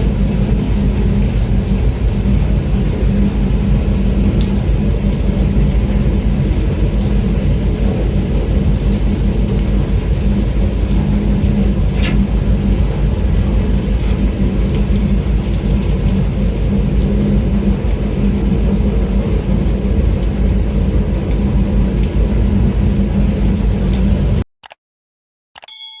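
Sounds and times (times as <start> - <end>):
boat engine rumbling: 0.0 - 24.4
rain falling: 0.0 - 24.4.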